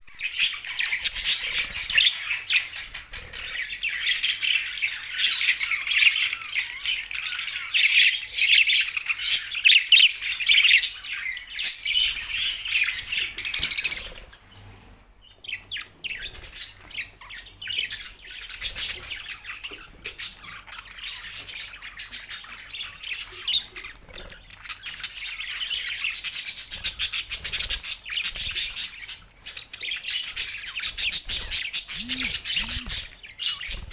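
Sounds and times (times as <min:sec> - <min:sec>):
budgerigars chattering: 0:29.8 - 0:33.9.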